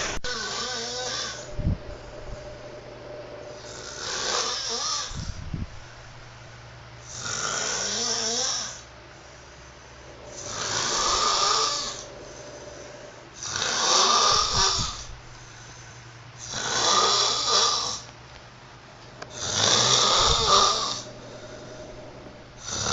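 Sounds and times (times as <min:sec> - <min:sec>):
person snoring: 0:00.0 - 0:05.3, 0:07.1 - 0:08.9, 0:09.9 - 0:15.1, 0:16.4 - 0:18.0, 0:19.3 - 0:22.9
quiet breathing: 0:00.0 - 0:18.1, 0:19.1 - 0:22.9.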